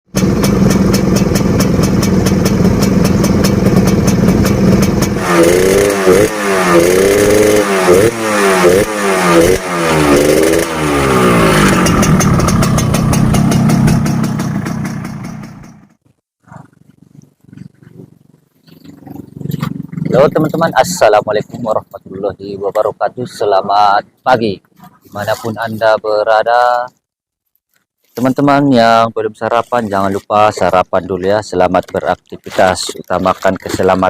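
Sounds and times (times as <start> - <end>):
motorcycle idling and revving: 0.1 - 22.9, 30.1 - 34.0.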